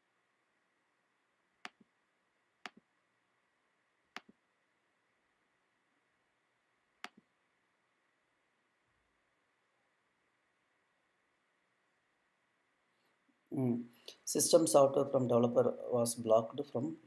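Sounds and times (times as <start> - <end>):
computer mouse clicks: 4.1 - 4.4, 7.0 - 7.3.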